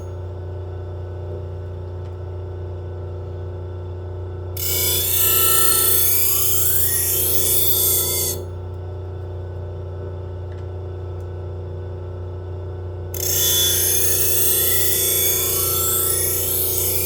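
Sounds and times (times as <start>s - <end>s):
knife blade grinding on wheel: 4.6s - 8.5s, 13.2s - 17.0s
sharpener motor humming: 4.6s - 8.5s, 13.2s - 17.0s.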